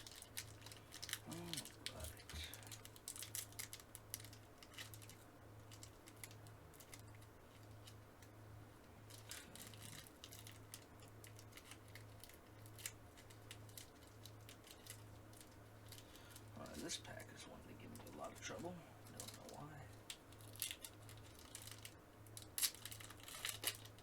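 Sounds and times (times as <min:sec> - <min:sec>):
foil wrapper crinkling and tearing: 0:00.0 - 0:24.0.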